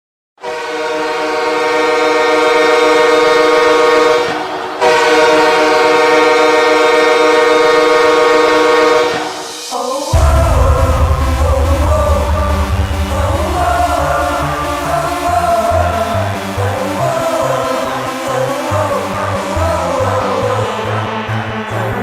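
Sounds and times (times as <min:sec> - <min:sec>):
train air horn blasts: 0:00.4 - 0:16.4.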